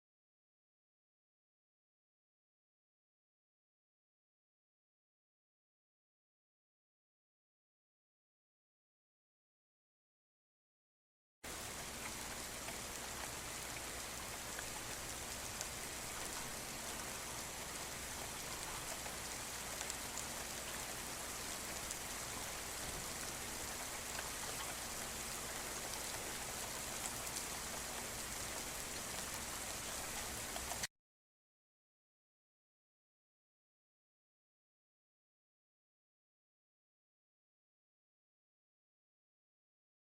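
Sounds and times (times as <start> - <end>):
raindrops ticking: 11.5 - 30.9
steady rain hiss: 11.5 - 30.9.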